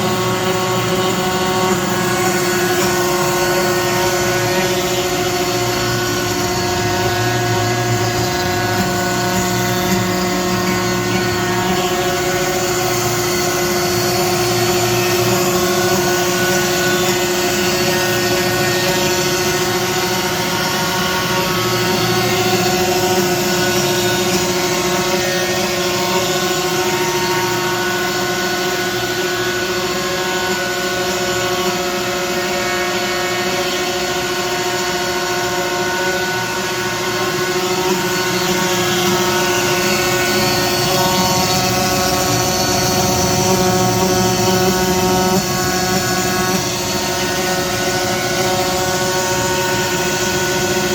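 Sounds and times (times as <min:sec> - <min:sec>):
cnc router whining: 0:00.0 - 0:50.9.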